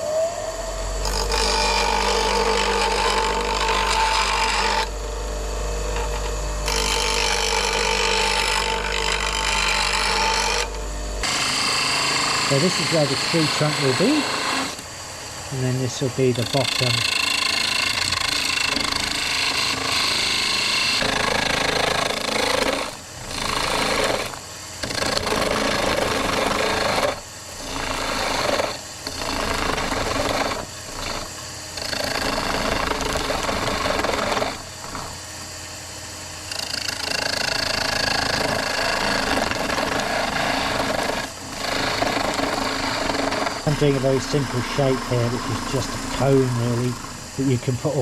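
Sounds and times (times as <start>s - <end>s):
wood lathe running: 0.0s - 48.0s
turning tool hissing cut: 6.0s - 48.0s.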